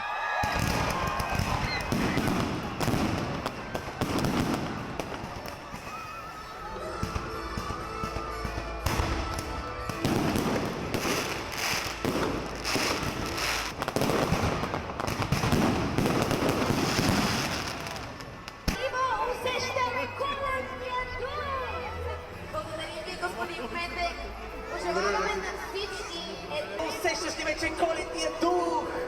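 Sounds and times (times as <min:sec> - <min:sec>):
fireworks bangs and crackles: 0:00.3 - 0:19.0
background music: 0:00.4 - 0:29.0.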